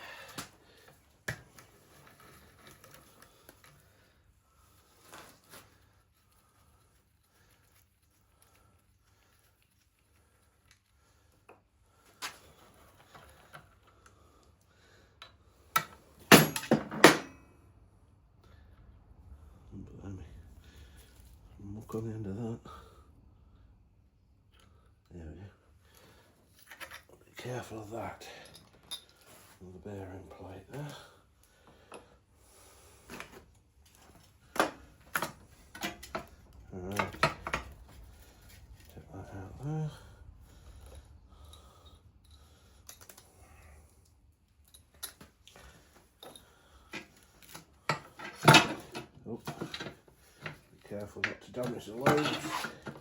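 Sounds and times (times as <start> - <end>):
metal tools clinking on engine: 15.8 - 17.4, 46.2 - 53.0.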